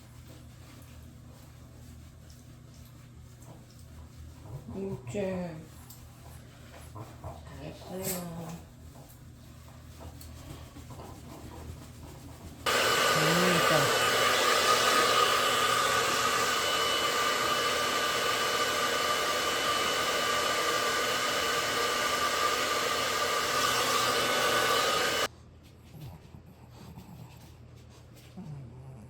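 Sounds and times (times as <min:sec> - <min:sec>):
hair dryer blowing: 0:12.7 - 0:25.3.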